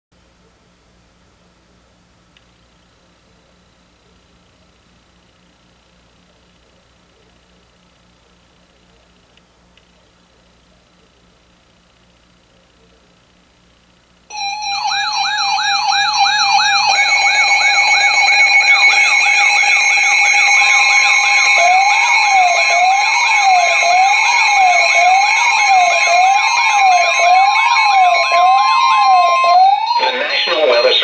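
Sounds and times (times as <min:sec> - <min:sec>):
electronic sirens wailing and yelping: 0:14.3 - 0:31.0
steady high alert tones: 0:14.3 - 0:31.0.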